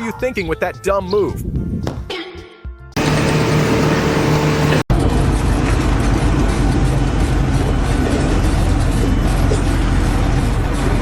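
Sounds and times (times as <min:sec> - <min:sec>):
deep low hum: 0:03.0 - 0:11.0
loud engine noise: 0:03.0 - 0:11.0.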